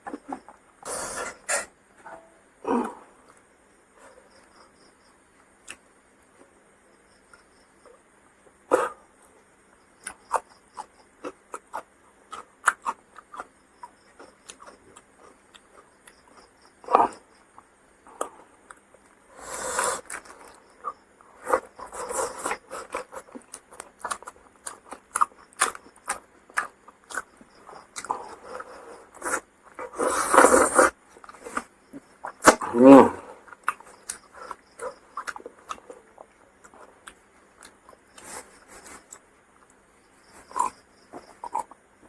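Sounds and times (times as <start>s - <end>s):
person chewing food: 10.0s - 19.2s, 19.8s - 42.0s.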